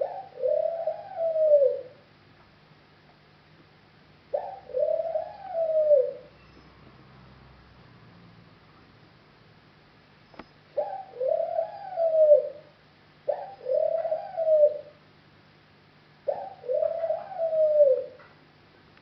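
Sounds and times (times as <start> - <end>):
bird cooing: 0.0 - 2.0, 4.3 - 6.5, 10.8 - 12.7, 13.3 - 15.0, 16.2 - 18.3
faint steady hum: 0.0 - 19.0.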